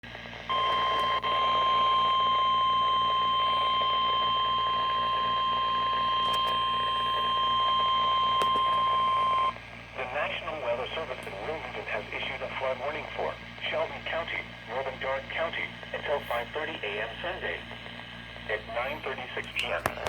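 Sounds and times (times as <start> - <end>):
steady electronic alarm tone: 0.5 - 9.6
faint radio hiss: 9.9 - 20.0.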